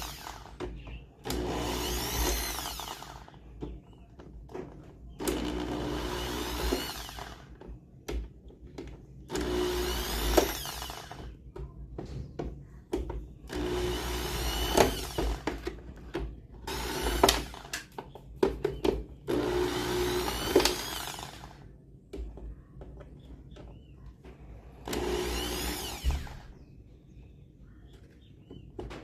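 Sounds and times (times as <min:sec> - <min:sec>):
electric drill whine: 0:00.0 - 0:00.5, 0:01.2 - 0:03.3, 0:05.2 - 0:07.5, 0:09.3 - 0:11.3, 0:13.5 - 0:15.5, 0:16.7 - 0:17.7, 0:19.3 - 0:21.6, 0:24.9 - 0:26.5.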